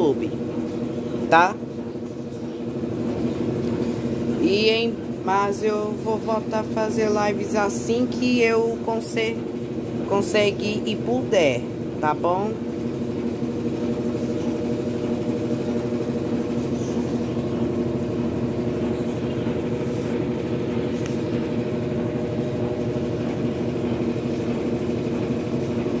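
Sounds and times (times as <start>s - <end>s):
strange noise from washing machine: 0.0s - 26.0s
washing machine motor hum: 0.0s - 26.0s.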